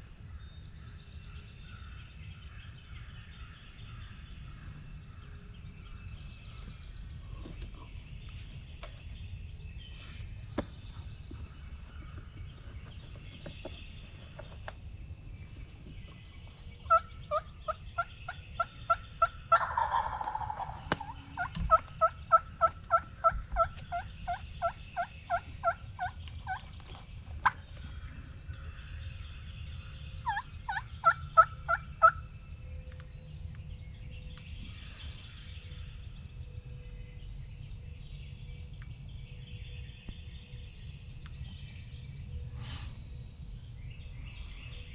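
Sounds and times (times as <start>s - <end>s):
turkey gobble: 16.9s - 26.6s, 30.2s - 32.2s
turkey yelps: 18.9s - 26.6s, 30.2s - 32.2s.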